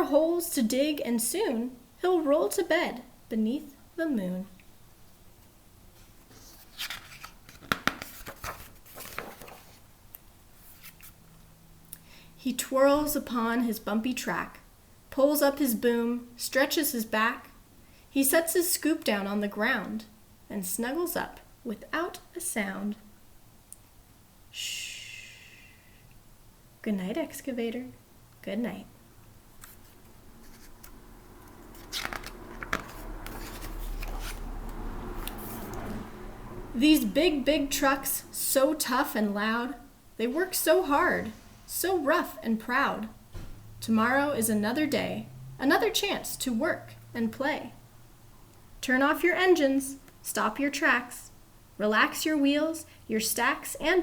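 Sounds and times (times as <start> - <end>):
paper page turning: 6.3 - 9.8, 10.6 - 11.2, 29.6 - 34.5.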